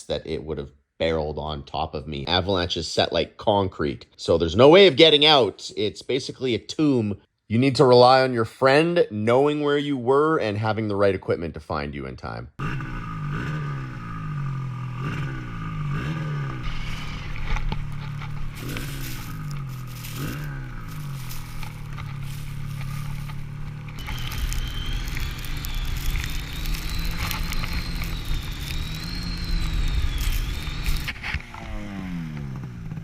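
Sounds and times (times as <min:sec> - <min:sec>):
snowmobile engine running: 0:15.2 - 0:33.0.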